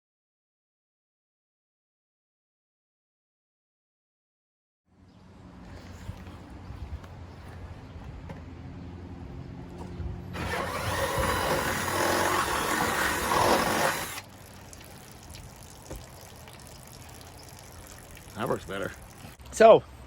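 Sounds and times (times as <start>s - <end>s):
hissing rush of spraying water: 10.4s - 19.4s.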